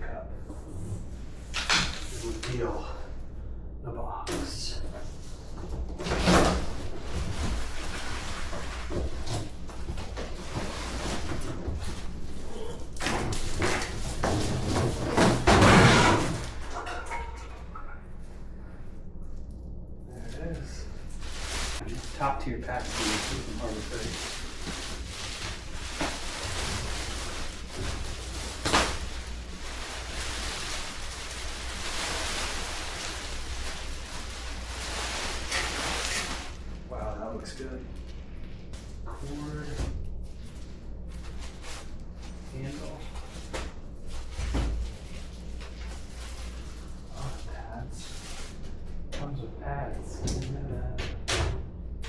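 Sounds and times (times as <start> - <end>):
packaging rustling: 21.0 - 36.6.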